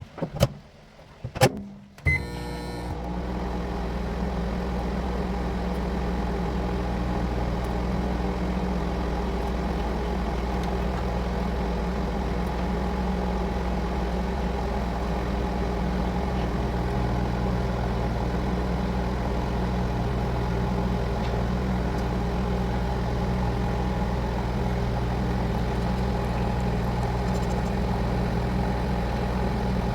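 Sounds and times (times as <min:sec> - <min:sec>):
microwave running hum: 0:01.5 - 0:29.9
short microwave beep: 0:02.0 - 0:03.0.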